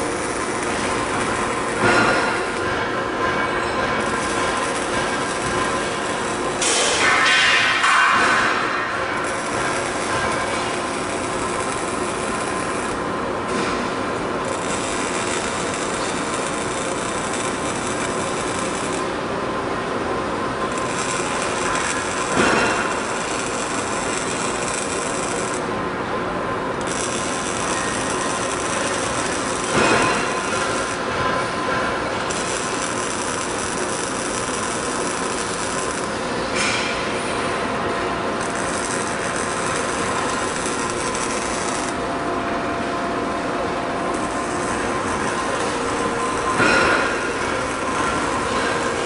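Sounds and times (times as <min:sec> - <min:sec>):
welding robot mechanical noise: 0:00.0 - 0:02.7, 0:04.0 - 0:08.5, 0:09.2 - 0:13.0, 0:14.4 - 0:19.1, 0:20.7 - 0:25.7, 0:26.8 - 0:31.1, 0:32.2 - 0:36.7, 0:38.4 - 0:42.0, 0:44.1 - 0:49.0.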